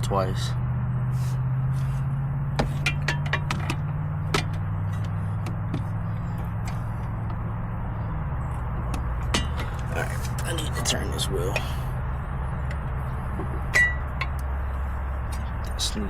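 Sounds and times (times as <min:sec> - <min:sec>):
steady low hum: 0:00.0 - 0:16.0
metal tools clinking: 0:13.6 - 0:14.3.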